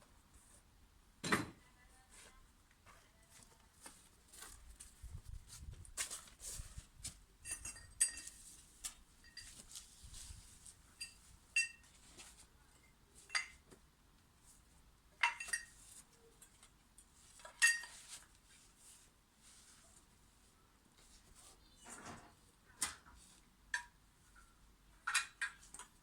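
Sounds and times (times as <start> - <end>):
metallic clinks and knocks: 7.4 - 8.4, 9.2 - 9.8, 11.0 - 12.0, 15.2 - 15.8, 17.4 - 18.0.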